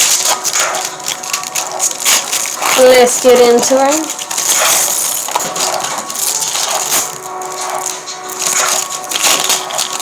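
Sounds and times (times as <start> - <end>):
foil wrapper tearing and crinkling: 0.0 - 10.0.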